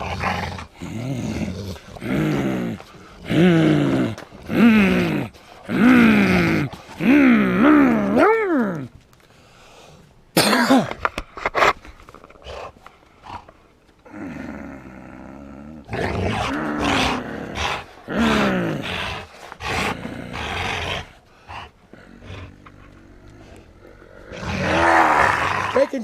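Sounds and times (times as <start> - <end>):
dog growling in play: 0.0 - 8.8, 12.4 - 25.9.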